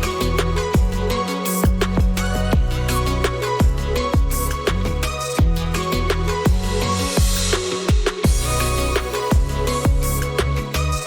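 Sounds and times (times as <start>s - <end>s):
deep kick drum beat: 0.7s - 2.9s, 3.6s - 5.8s, 6.4s - 10.4s.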